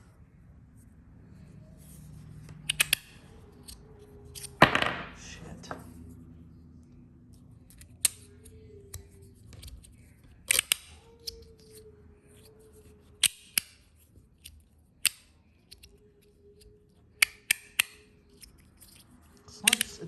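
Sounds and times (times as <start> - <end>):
metallic clicks of fidget slider: 2.6 - 4.6, 7.7 - 11.8.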